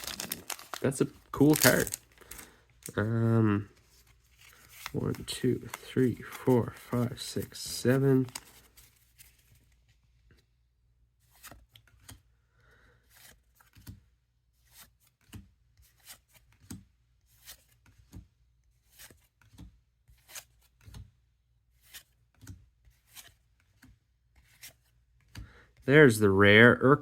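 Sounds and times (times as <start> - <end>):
cards clicking and rubbing: 0.0 - 3.0, 3.9 - 9.5.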